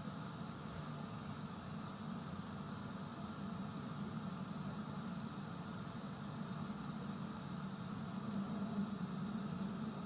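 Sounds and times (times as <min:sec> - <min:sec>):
gas heater hiss: 0:00.0 - 0:10.0.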